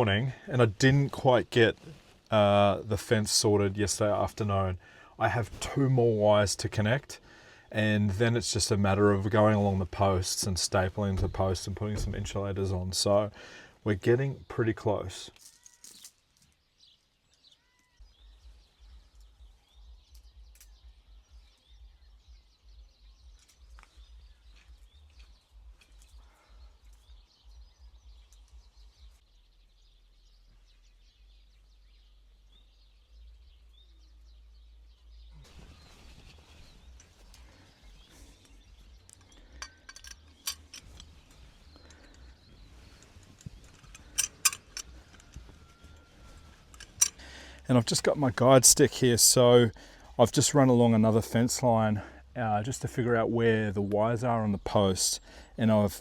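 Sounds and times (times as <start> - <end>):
faint bird chirps: 15.3 - 48.9.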